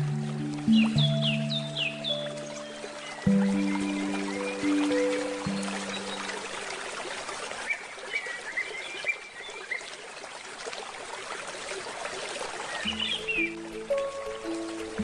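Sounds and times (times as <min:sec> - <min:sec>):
handpan note ringing: 0:00.0 - 0:07.0, 0:12.8 - 0:15.0
trickling stream water: 0:00.0 - 0:15.0
small bird chirping: 0:12.8 - 0:15.0.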